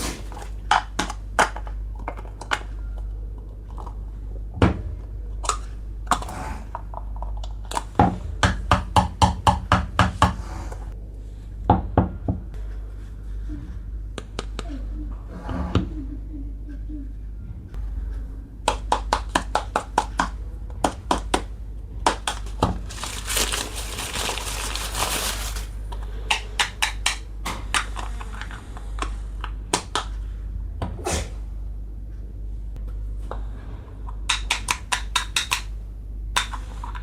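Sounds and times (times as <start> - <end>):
plastic packaging crinkling: 22.2 - 25.8.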